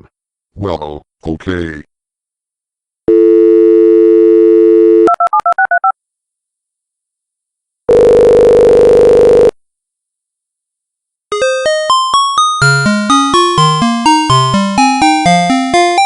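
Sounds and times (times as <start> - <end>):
telephone ringback tone: 3.1 - 5.9.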